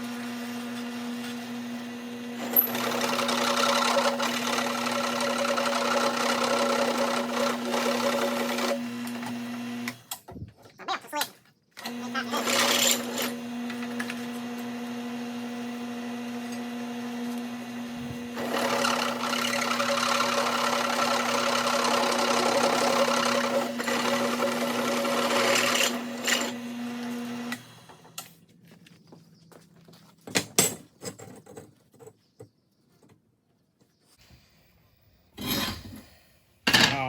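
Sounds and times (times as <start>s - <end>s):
electric drill motor running: 0.0s - 10.1s, 11.8s - 28.1s
drill bit grinding into metal: 2.4s - 10.0s, 11.8s - 15.0s, 18.3s - 27.6s.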